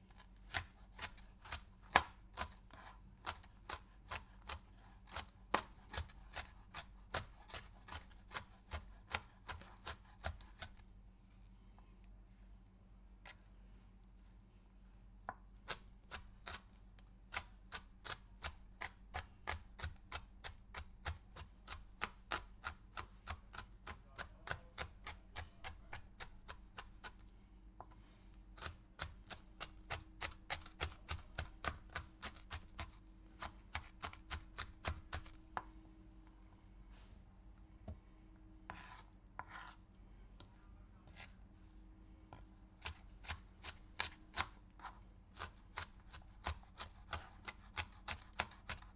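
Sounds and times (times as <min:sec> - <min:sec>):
faint steady hum: 0:00.0 - 0:48.8
knife chopping pepper: 0:00.1 - 0:10.8, 0:15.6 - 0:16.7, 0:17.3 - 0:27.2, 0:28.6 - 0:35.7, 0:38.7 - 0:39.8, 0:42.3 - 0:48.9
knife scraping board: 0:00.1 - 0:10.8, 0:38.7 - 0:39.8, 0:41.1 - 0:41.4, 0:42.3 - 0:48.9.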